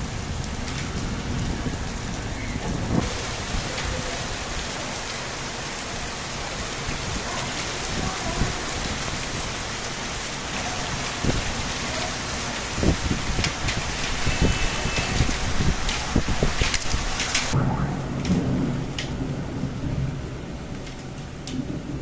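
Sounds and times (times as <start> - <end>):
heavy rain falling: 0.0 - 22.0
raindrops tapping: 0.0 - 22.0.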